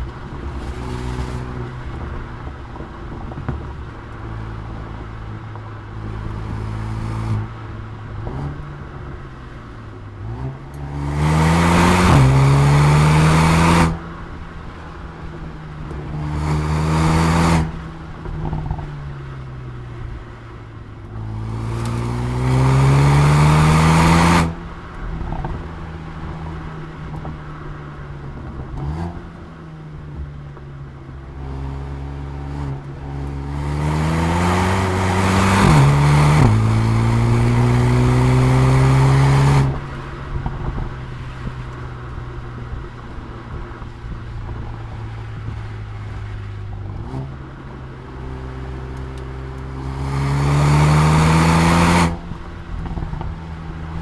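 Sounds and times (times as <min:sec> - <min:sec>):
exhaust pops: 0:00.0 - 0:23.2, 0:34.8 - 0:50.5, 0:52.0 - 0:54.0
car engine accelerating: 0:00.0 - 0:54.0.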